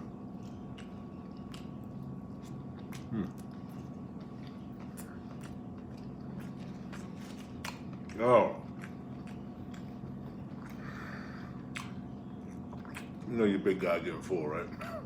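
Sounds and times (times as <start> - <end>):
steady low hum: 0.0 - 15.0
wet chewing mouth clicks: 0.4 - 8.1, 11.6 - 13.3.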